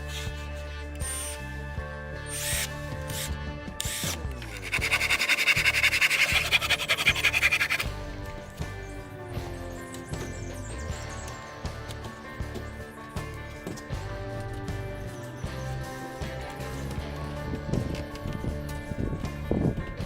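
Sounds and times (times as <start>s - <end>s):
background music: 0.0s - 20.0s
rapid rhythmic rasping: 4.4s - 8.0s.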